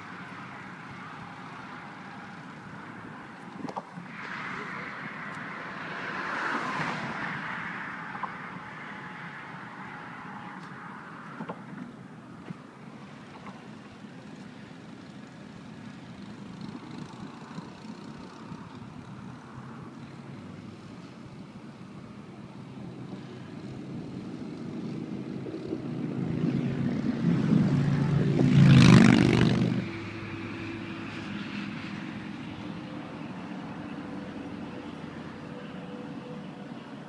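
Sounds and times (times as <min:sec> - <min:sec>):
vehicle passing by: 0:04.0 - 0:11.2, 0:22.7 - 0:36.4.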